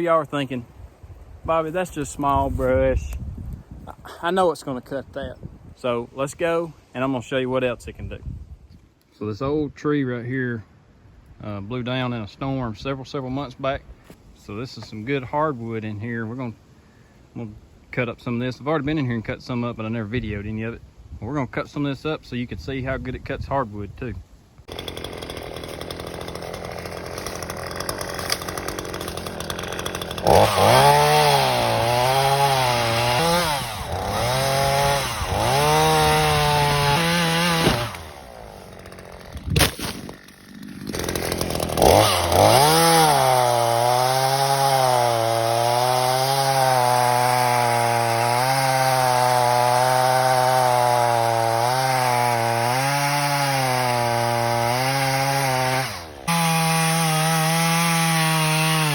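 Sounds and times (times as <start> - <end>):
chainsaw cutting a tree: 24.7 - 58.9.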